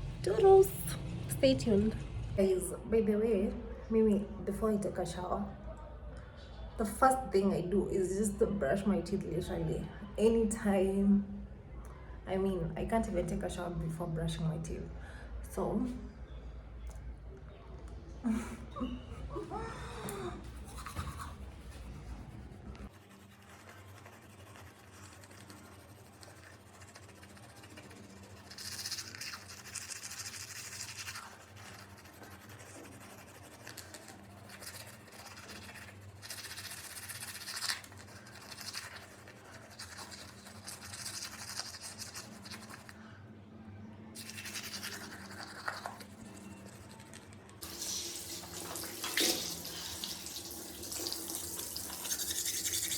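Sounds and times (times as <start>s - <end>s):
toothbrush scrubbing teeth: 20.4s - 43.0s, 44.2s - 52.9s.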